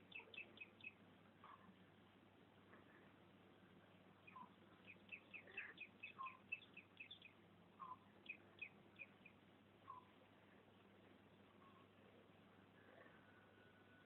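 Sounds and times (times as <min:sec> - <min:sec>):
bird chirping: 0:00.0 - 0:01.8, 0:04.2 - 0:10.3, 0:11.3 - 0:12.2.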